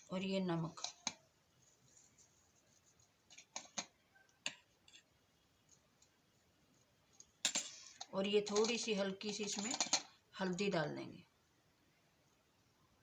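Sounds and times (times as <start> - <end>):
kitchen items clicking and tapping: 3.3 - 5.1, 7.4 - 10.2.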